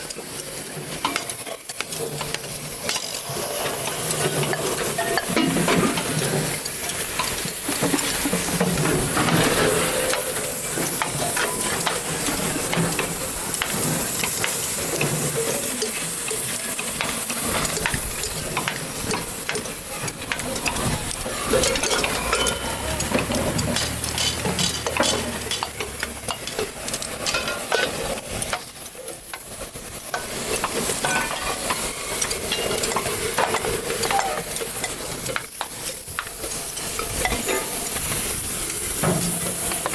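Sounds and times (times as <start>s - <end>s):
hiss: 0.0s - 39.9s
metallic clicks and scrapes: 17.0s - 33.7s.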